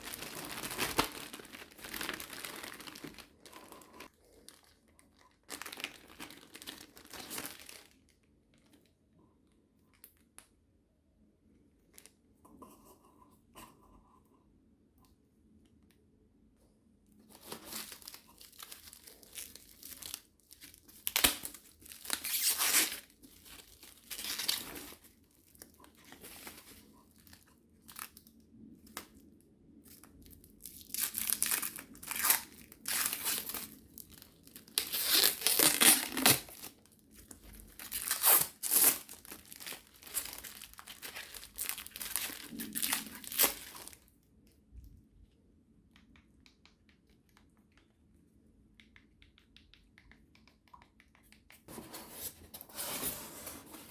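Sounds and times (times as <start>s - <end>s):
packaging torn and crinkled: 0.0s - 8.8s, 17.3s - 29.1s, 29.9s - 44.1s.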